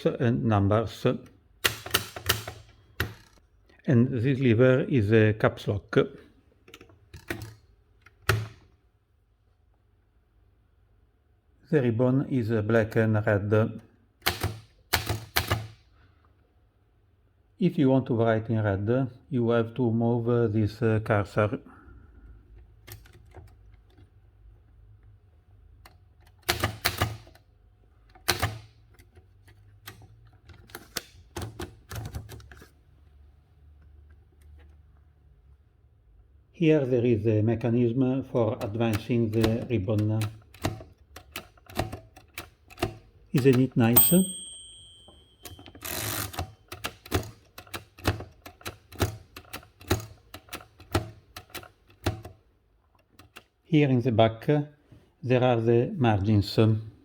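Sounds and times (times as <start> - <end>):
typewriter mechanism clacking: 1.6 - 3.4, 14.2 - 15.8, 26.2 - 27.4, 38.6 - 52.4.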